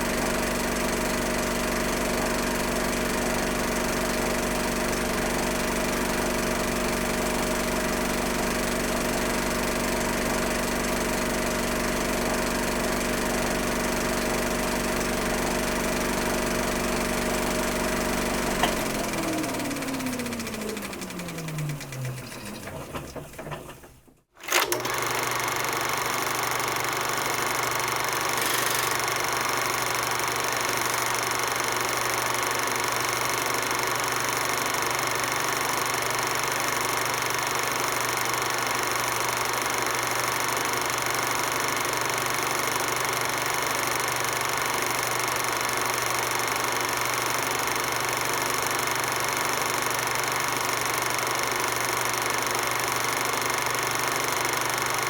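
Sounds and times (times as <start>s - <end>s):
film projector humming: 0.0s - 55.0s
film projector spinning down: 0.0s - 55.0s.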